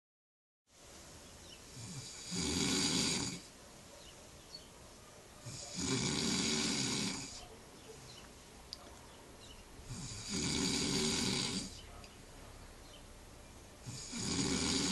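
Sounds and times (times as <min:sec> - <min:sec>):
person snoring: 0:01.8 - 0:03.5, 0:05.5 - 0:07.4, 0:09.9 - 0:11.8, 0:13.8 - 0:14.9.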